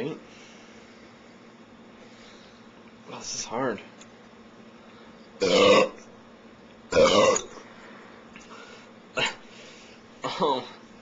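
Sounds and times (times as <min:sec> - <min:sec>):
man belching: 0:05.4 - 0:06.0, 0:06.9 - 0:07.6.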